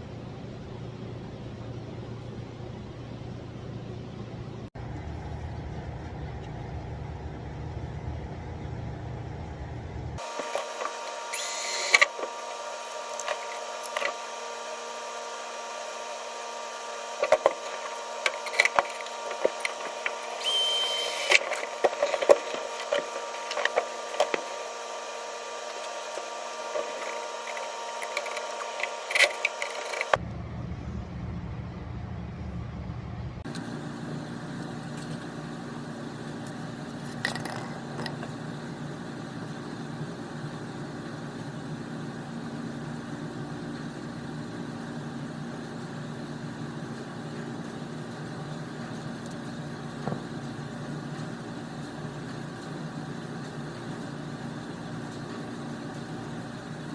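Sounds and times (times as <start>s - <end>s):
steady mechanical hum: 0.0s - 56.9s.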